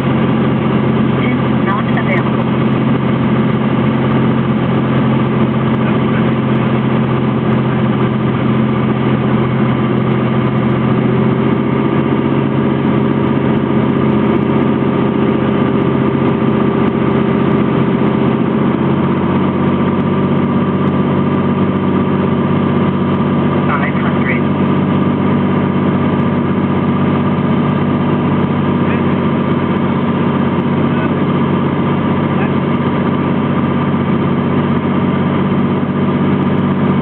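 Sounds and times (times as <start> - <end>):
propeller plane engine drone: 0.0 - 37.0.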